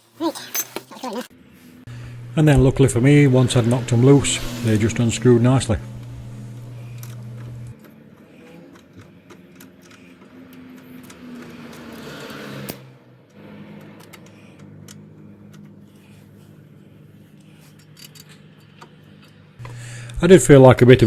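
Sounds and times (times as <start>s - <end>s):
low steady hum: 1.9s - 7.9s, 14.1s - 21.0s
tool handling: 1.9s - 19.9s.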